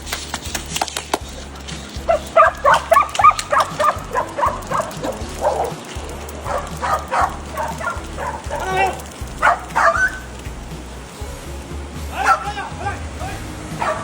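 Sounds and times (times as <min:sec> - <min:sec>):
dog barking: 0:02.1 - 0:10.3, 0:12.2 - 0:12.6, 0:13.8 - 0:14.0.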